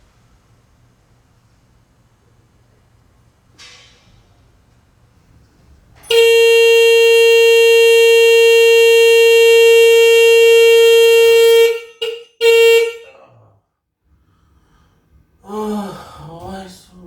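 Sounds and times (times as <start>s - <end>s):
car horns blaring: 6.0s - 13.4s.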